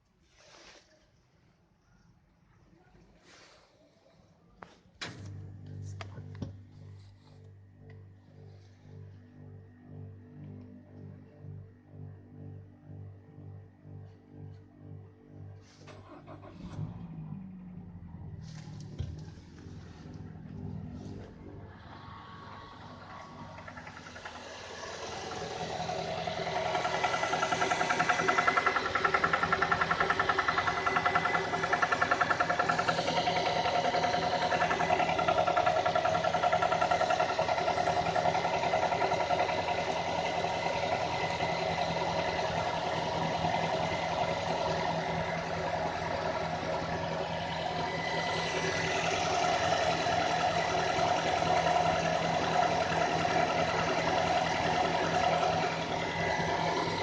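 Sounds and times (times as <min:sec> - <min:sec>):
car engine running: 0:05.0 - 0:57.0
rapid rhythmic engine knock: 0:19.0 - 0:57.0.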